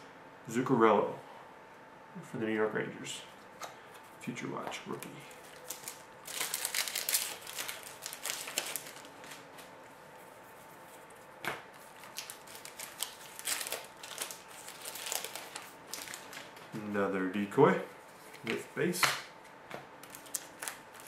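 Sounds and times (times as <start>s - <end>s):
foil wrapper crinkling: 5.0s - 9.7s, 11.8s - 16.8s, 20.0s - 21.0s.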